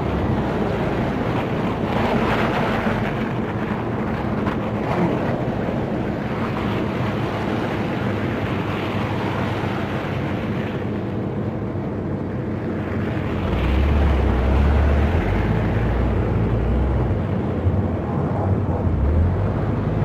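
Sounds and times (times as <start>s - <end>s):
car road and engine noise: 0.0s - 20.0s
deep low rumble: 12.8s - 20.0s.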